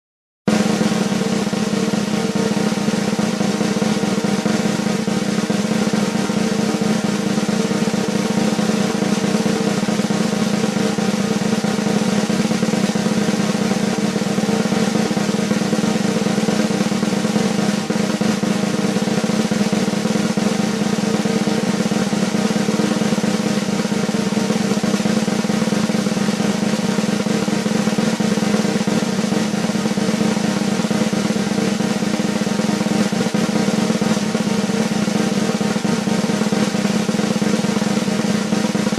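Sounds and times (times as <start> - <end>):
snare drum roll: 0.5 - 38.9.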